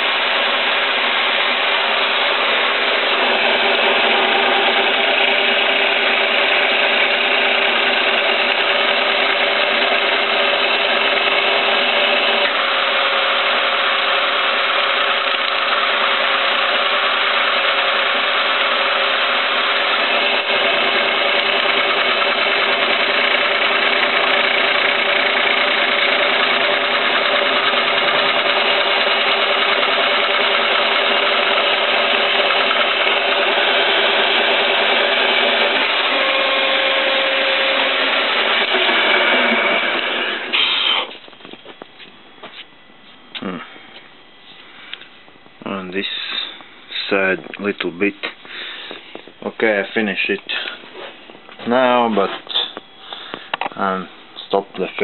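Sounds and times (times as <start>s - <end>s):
milling machine cutting steel: 0.0s - 41.6s.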